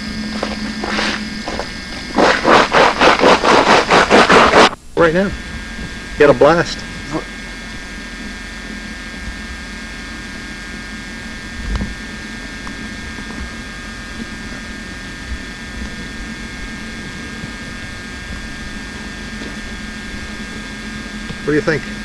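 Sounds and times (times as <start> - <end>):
mechanical hum with high tones: 0.0 - 22.0.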